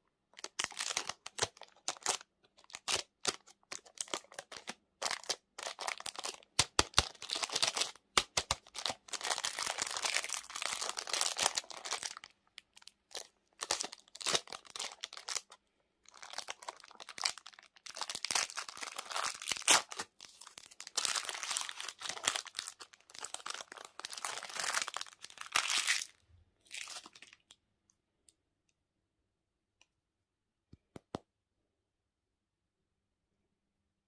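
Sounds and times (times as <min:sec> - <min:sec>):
plastic wrapper crinkling: 0:00.3 - 0:27.6.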